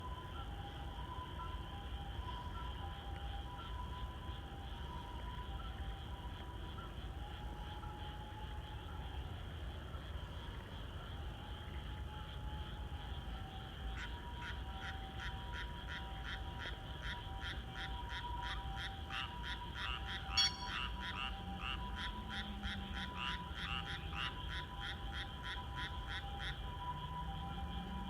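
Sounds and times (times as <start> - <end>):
frogs calling in chorus: 12.9 - 28.0.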